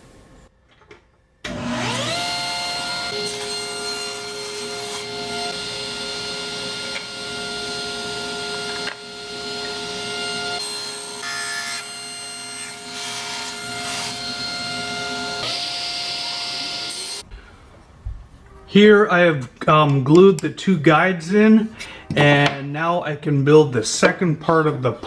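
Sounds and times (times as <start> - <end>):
power tool cutting wood: 1.4 - 17.2.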